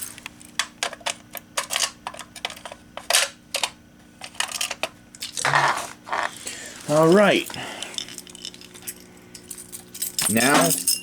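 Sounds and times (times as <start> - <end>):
key clicking and rattling in lock: 8.1 - 11.0.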